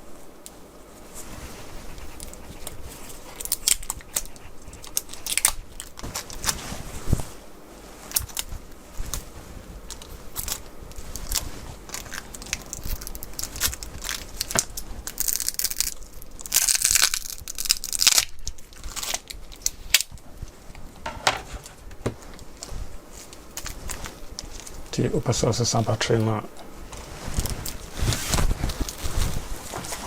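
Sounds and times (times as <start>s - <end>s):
adhesive tearing clicks and crackles: 9.9s - 20.2s.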